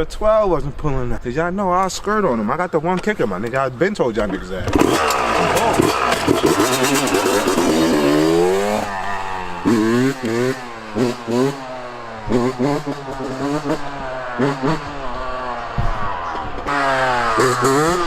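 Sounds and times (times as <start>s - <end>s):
two-stroke engine revving: 4.6s - 18.0s.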